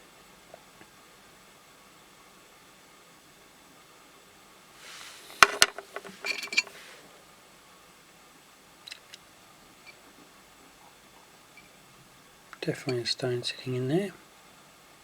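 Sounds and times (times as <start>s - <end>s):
stones clicking and clinking: 5.3s - 6.8s.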